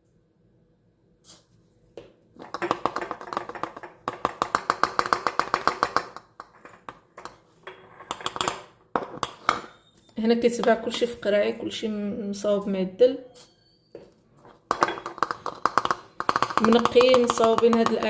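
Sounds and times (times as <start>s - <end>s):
spoon tapping against a bottle: 14.7s - 18.0s.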